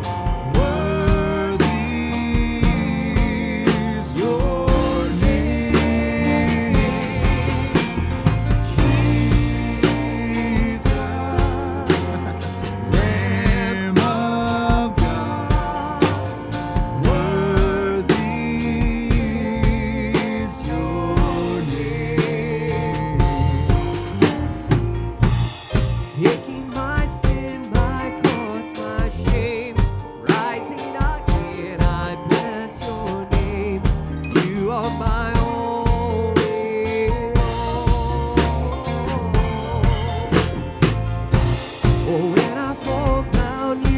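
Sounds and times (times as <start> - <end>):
drum kit beat: 0.0 - 43.9
live band playing: 0.0 - 43.9
wavering lead melody: 0.0 - 43.9.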